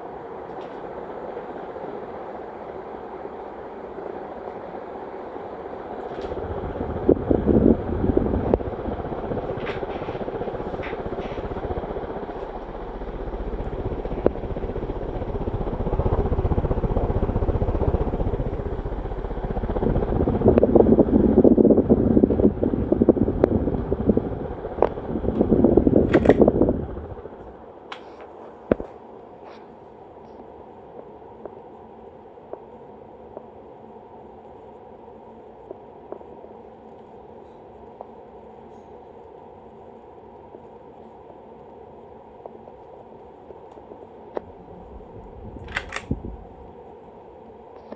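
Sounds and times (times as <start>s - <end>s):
ceiling fan humming: 0.0s - 47.9s
fan rattling: 6.0s - 28.8s, 44.4s - 46.8s.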